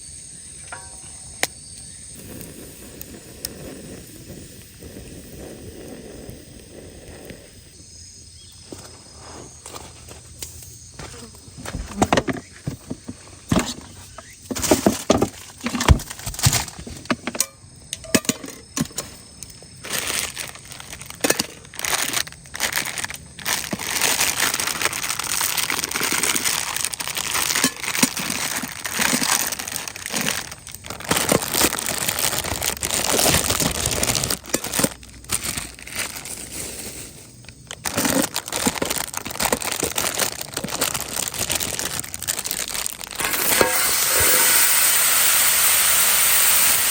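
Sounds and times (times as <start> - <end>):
dense steady hiss: 0.0 - 46.9
crinkling and rustling: 8.6 - 44.6.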